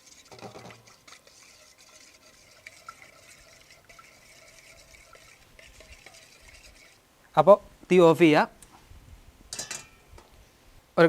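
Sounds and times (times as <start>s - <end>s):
liquid stirring in a pan: 0.0s - 7.1s.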